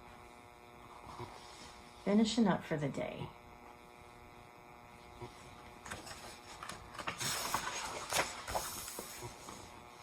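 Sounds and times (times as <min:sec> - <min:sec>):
steady electrical hum: 0:00.0 - 0:10.0
book pages rustling: 0:05.9 - 0:09.7.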